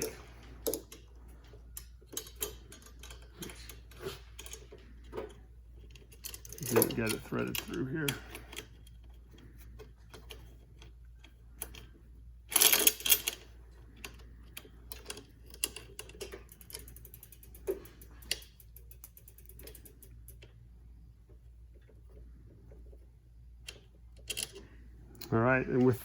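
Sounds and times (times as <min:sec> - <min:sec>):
bicycle chain clicking and rattling: 0:00.0 - 0:20.7.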